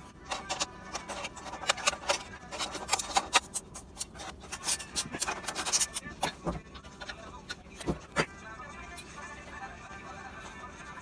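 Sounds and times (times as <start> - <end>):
hand tools clicking and scraping: 0.2 - 8.3.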